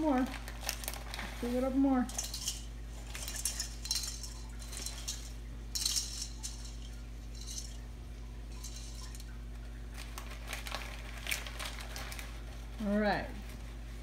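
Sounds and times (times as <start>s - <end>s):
steady low hum: 0.0s - 14.0s
dishes and utensils clinking: 2.0s - 7.9s, 8.5s - 9.4s.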